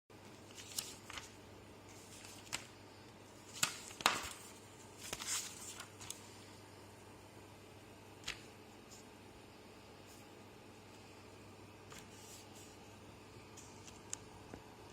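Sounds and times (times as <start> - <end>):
faint low hum: 0.1 - 14.9.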